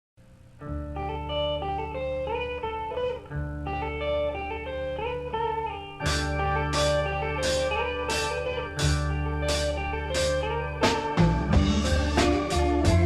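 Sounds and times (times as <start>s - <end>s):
bass guitar: 0.6s - 13.0s
electric guitar riff: 0.6s - 13.0s
drums and cymbals: 6.1s - 13.0s.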